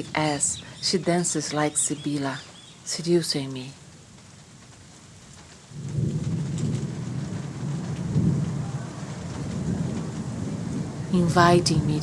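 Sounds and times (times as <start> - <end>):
rain: 0.0 - 12.0
thunder rumbling: 5.2 - 12.0.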